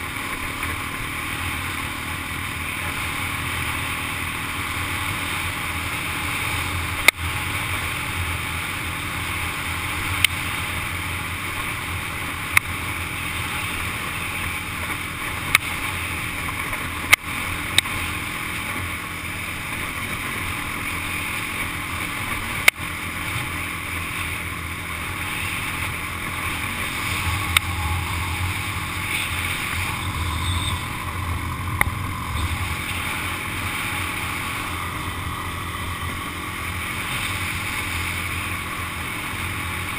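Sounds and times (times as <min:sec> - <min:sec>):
atv engine running: 0:00.0 - 0:39.9
wind noise: 0:25.3 - 0:37.9.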